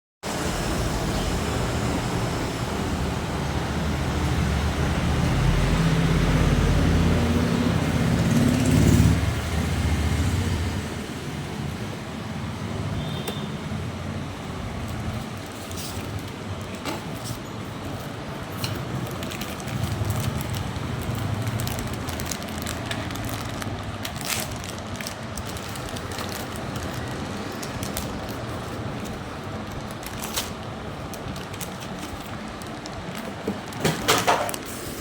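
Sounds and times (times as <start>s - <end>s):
vehicle engine rumbling past: 0.4s - 12.9s.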